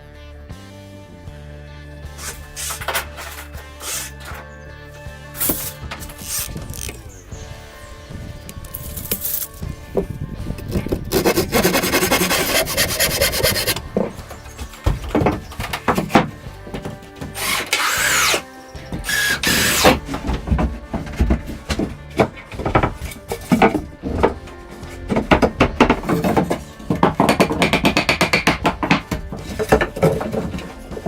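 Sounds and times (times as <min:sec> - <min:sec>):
hand tools rasping wood: 0:02.2 - 0:04.4, 0:11.0 - 0:31.0.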